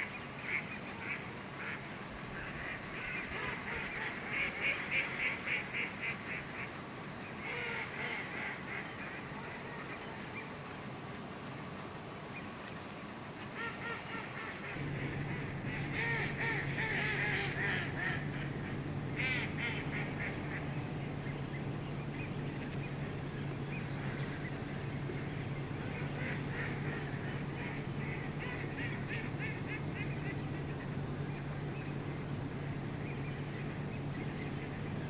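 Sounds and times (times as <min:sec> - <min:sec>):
waterfowl calling: 0:13.6 - 0:35.0
steady low hum: 0:14.6 - 0:35.0.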